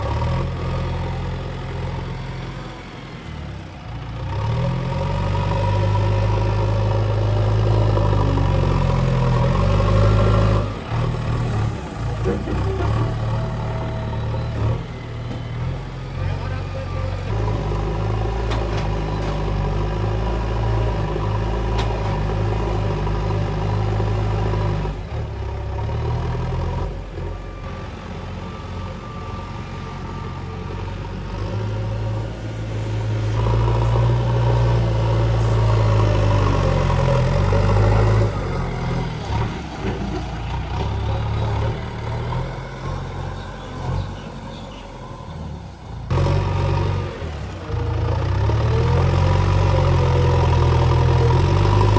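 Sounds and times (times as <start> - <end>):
diesel engine revving: 0.0 - 51.9.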